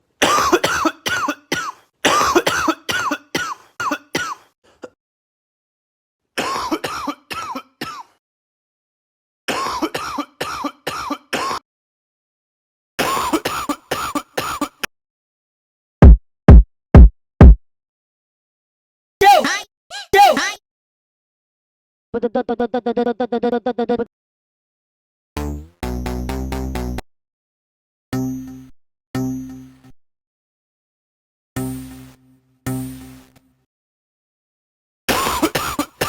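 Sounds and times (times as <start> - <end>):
rhythmic coughs: 0.2 - 5.0, 6.4 - 8.2, 9.5 - 11.6, 13.0 - 14.9, 35.1 - 36.0.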